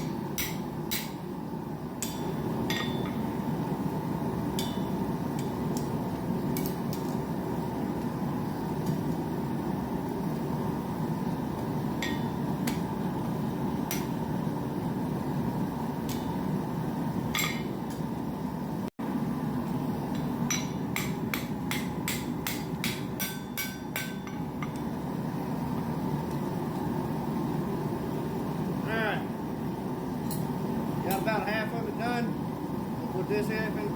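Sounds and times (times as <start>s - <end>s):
hammer striking steel on anvil: 0.0s - 1.2s, 2.0s - 3.3s, 4.5s - 5.6s, 12.0s - 12.9s, 17.3s - 18.0s, 20.2s - 24.8s.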